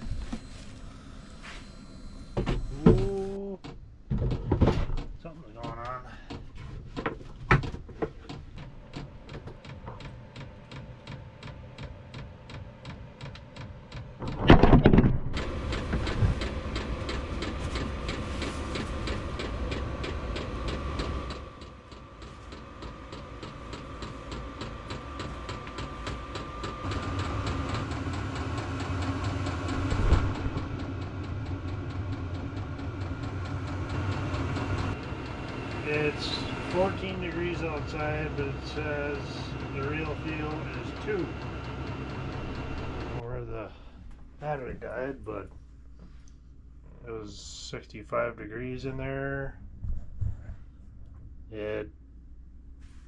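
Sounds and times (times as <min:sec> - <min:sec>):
heater blower and burner whine: 0:00.0 - 0:03.6, 0:15.2 - 0:47.8
fuel pump ticking: 0:15.4 - 0:43.2.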